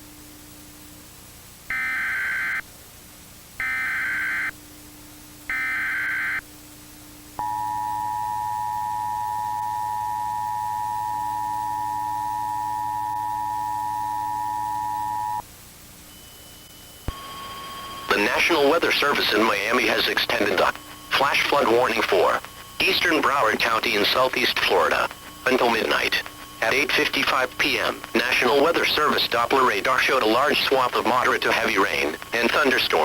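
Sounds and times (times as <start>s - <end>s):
two-tone attention signal: 7.4s - 15.4s
warbling digital data tones: 16.1s - 33.0s.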